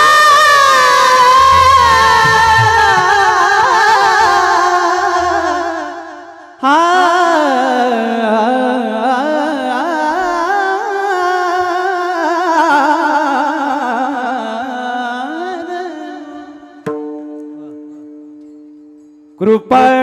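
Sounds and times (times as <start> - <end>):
man singing wordless melismatic phrase: 0.8 - 16.6.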